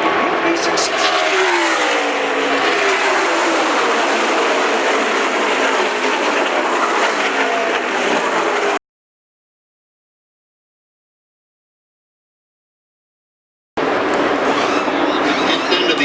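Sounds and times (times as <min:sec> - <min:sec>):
race car engines at full throttle: 0:00.0 - 0:08.8, 0:13.8 - 0:16.0.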